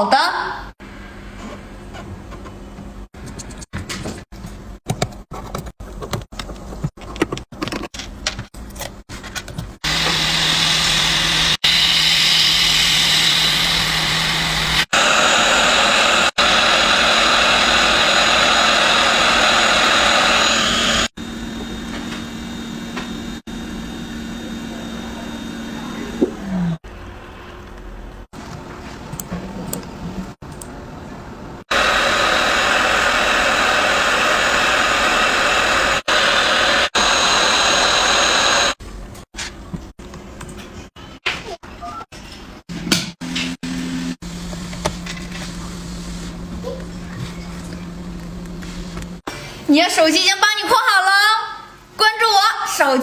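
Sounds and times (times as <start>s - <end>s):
machine blower rushing: 9.8s - 27.0s, 31.7s - 38.8s.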